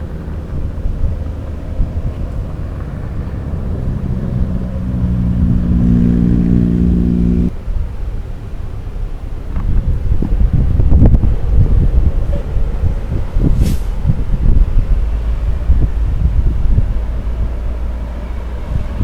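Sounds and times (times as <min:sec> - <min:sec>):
bus rumbling on road: 0:00.0 - 0:19.0
multi-tone bus horn chord: 0:04.0 - 0:07.5.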